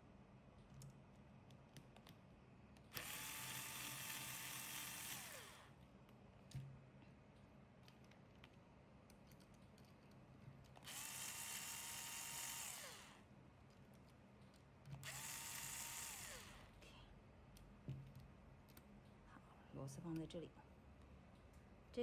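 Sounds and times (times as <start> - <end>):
electric screwdriver whining: 2.9 - 5.7, 10.8 - 13.2, 15.0 - 16.7.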